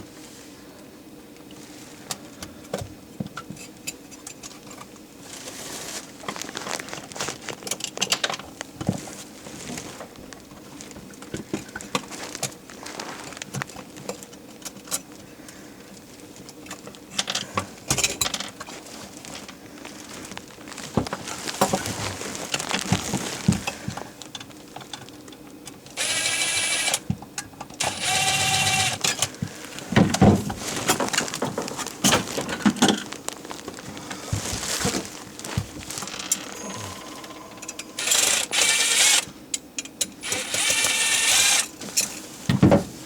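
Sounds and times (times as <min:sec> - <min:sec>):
cordless screw gun running: 0:26.0 - 0:27.0, 0:27.8 - 0:29.1, 0:36.1 - 0:39.3, 0:40.2 - 0:41.7.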